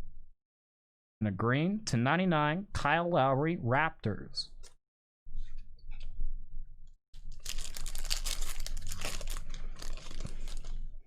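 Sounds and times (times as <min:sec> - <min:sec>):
wrapper crinkling and tearing: 0:07.2 - 0:10.9.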